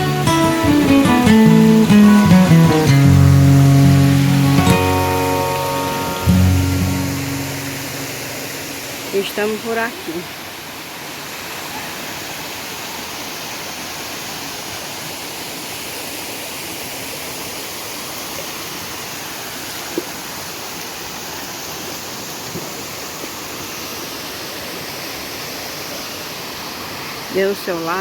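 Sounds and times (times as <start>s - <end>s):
waterfall roaring: 0.0s - 28.0s.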